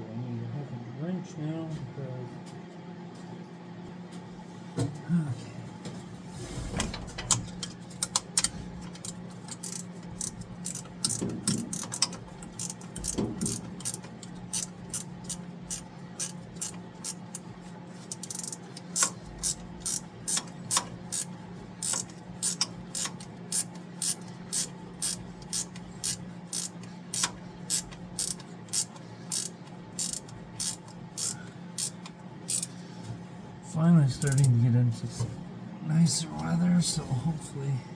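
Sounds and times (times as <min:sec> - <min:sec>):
ratchet wrench clicking: 0:07.3 - 0:32.7, 0:34.2 - 0:34.5.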